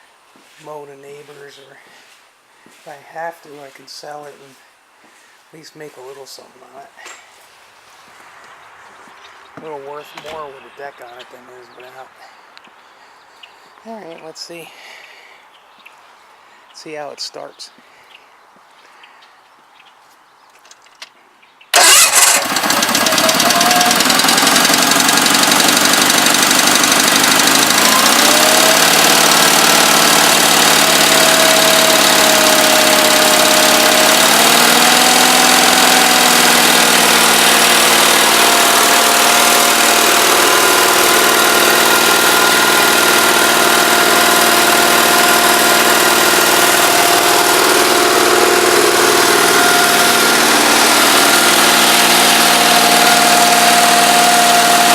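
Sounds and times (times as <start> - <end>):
tractor engine starting and running: 21.7 - 54.9.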